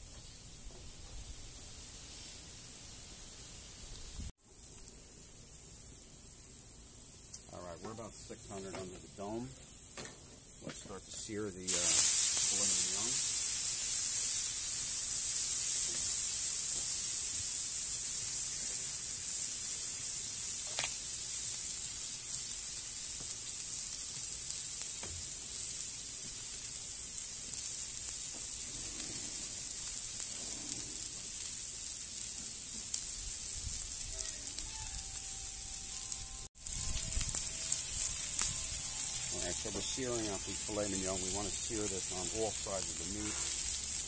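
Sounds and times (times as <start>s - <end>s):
steak sizzling on a griddle: 1.7s - 44.0s.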